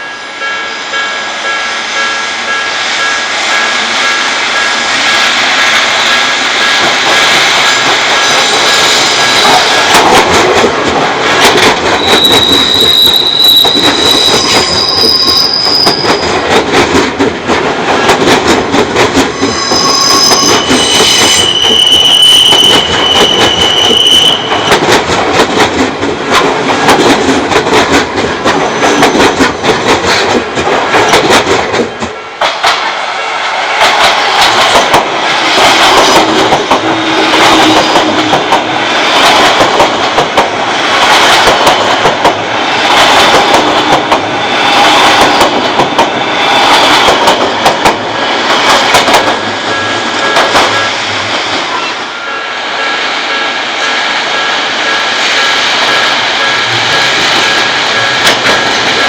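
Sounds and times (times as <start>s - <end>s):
train wheels clattering on rails: 0.0s - 59.0s
high wheel squeal: 12.0s - 16.4s, 19.3s - 24.8s.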